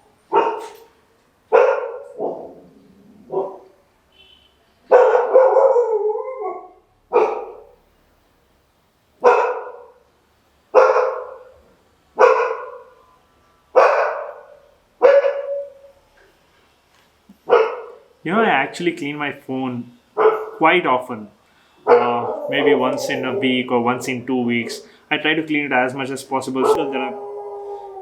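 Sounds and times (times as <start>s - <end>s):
dog barking: 0.3s - 0.8s, 1.5s - 2.6s, 3.3s - 3.7s, 4.9s - 6.0s, 7.1s - 7.8s, 9.2s - 10.0s, 10.8s - 11.6s, 12.2s - 12.9s, 13.8s - 15.9s, 17.4s - 18.1s, 20.2s - 20.6s, 21.8s - 24.1s, 26.6s - 27.0s.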